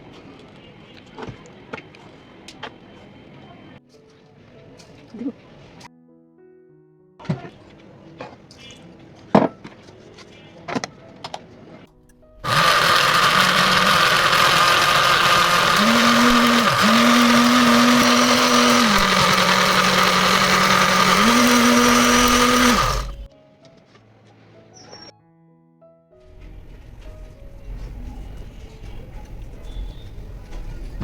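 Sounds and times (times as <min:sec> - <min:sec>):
blender motor running: 0:12.4 - 0:23.3.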